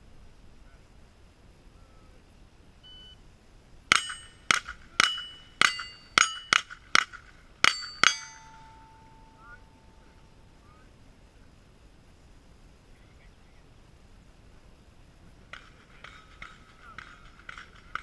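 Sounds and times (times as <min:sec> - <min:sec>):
steel plate ringing clang: 0:03.9 - 0:10.2.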